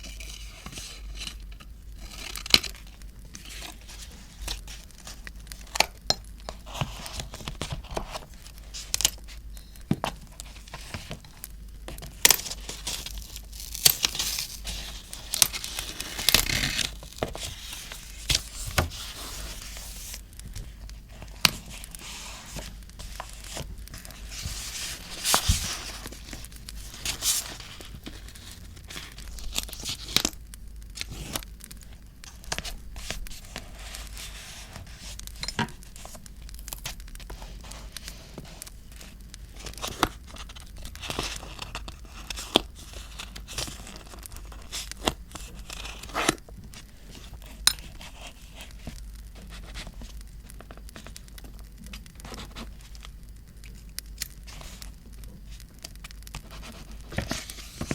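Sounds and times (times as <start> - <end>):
paper rustling and tearing: 12.2 - 30.4.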